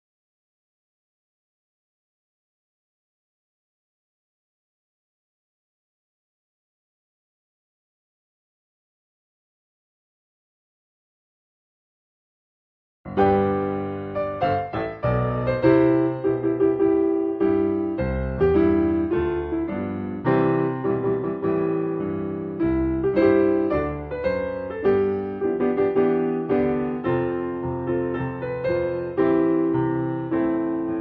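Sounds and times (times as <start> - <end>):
solo piano music: 13.1 - 31.0.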